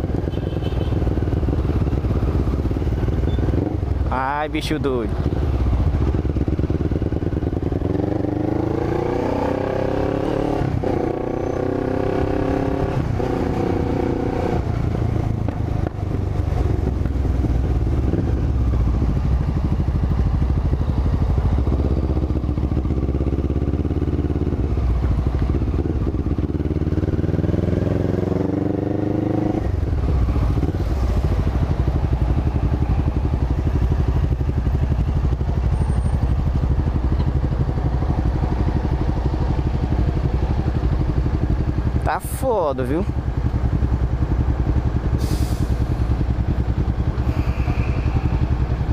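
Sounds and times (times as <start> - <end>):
motorcycle engine revving: 0.0 - 42.1.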